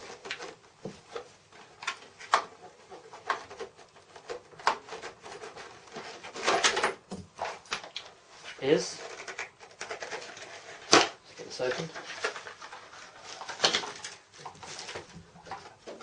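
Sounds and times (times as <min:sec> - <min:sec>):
packaging rustling: 0:07.4 - 0:16.0.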